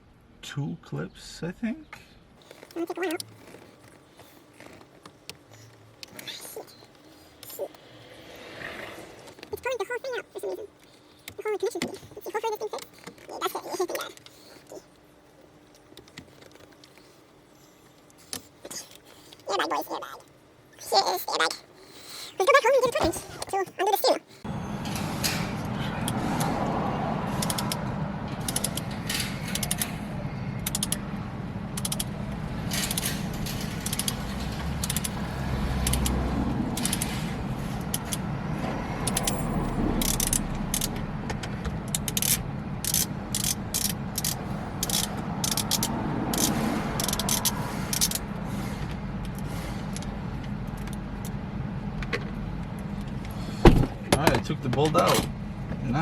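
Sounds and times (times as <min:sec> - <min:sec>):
ratchet wrench clicking: 0:27.4 - 0:27.8, 0:28.4 - 0:29.9, 0:30.6 - 0:31.0, 0:31.8 - 0:32.1, 0:32.7 - 0:34.2, 0:34.8 - 0:35.2, 0:35.8 - 0:36.2, 0:36.8 - 0:37.1, 0:37.8 - 0:38.2, 0:39.0 - 0:41.0, 0:41.9 - 0:48.2.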